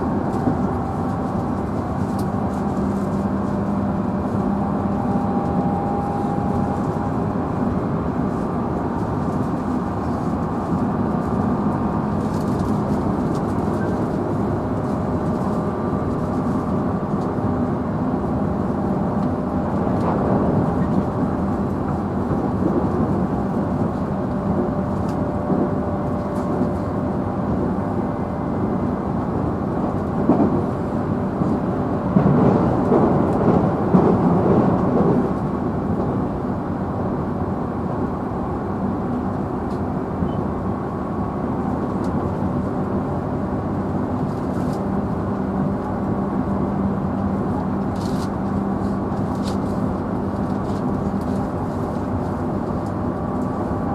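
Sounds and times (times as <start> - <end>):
low humming of motors: 0.0 - 32.5
train wheels rumbling on rail: 0.0 - 53.9.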